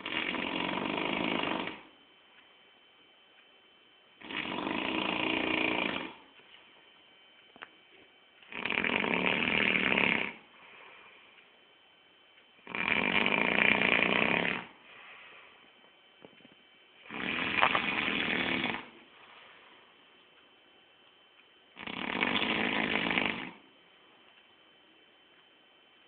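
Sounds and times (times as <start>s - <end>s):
man snoring loudly: 0.0s - 1.9s, 4.2s - 6.2s, 8.5s - 10.5s, 12.6s - 14.8s, 17.0s - 19.0s, 21.8s - 23.6s
faint breath: 10.5s - 11.5s, 14.8s - 15.8s, 19.0s - 20.0s.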